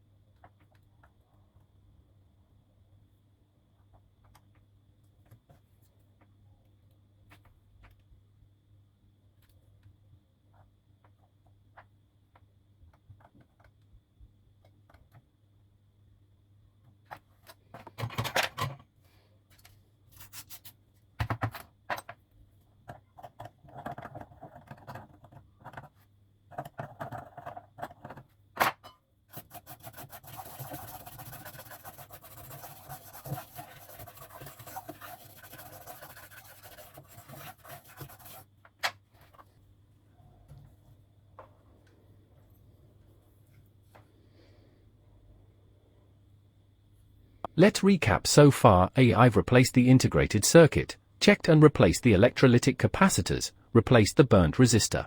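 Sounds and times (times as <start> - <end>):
continuous scraping: 29.4 - 38.5.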